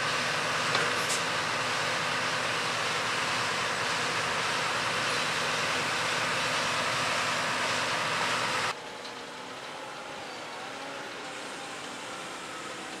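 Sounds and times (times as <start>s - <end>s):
farm machinery running: 0.0s - 13.0s.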